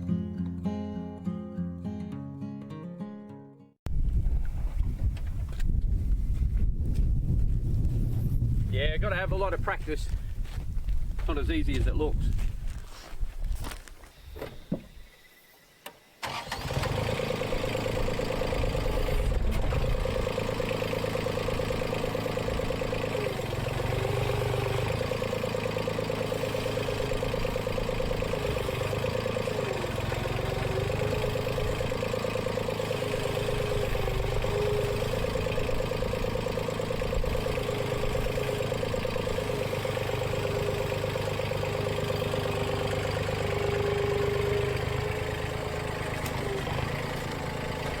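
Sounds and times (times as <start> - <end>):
excavator diesel engine running: 16.2 - 48.0.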